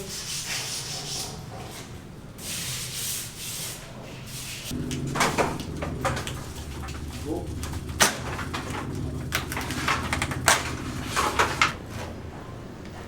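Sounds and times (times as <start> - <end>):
low hum: 4.7 - 12.1.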